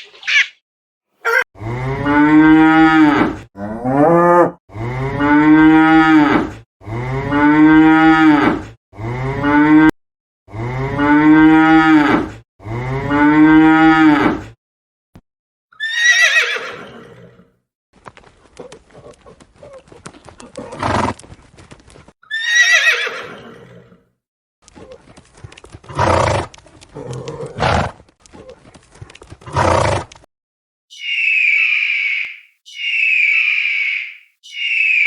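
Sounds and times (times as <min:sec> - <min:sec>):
cow mooing: 0:01.3 - 0:08.4, 0:09.0 - 0:09.9.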